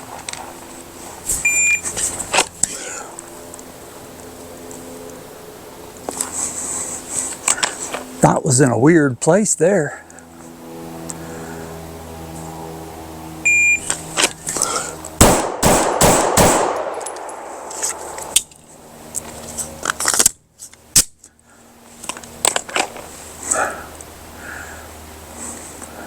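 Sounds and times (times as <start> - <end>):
shot timer beep: 1.5 - 1.8, 13.5 - 13.9
pistol firing rapid shots: 15.2 - 17.6.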